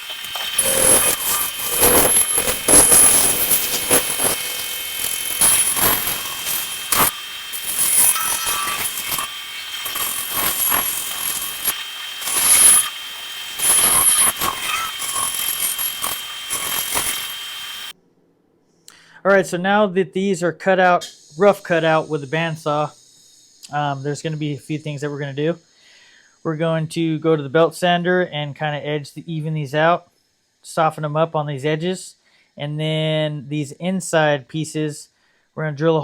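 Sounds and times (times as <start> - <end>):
bandsaw whine: 0.0 - 18.0
saw cutting wood: 0.0 - 18.0.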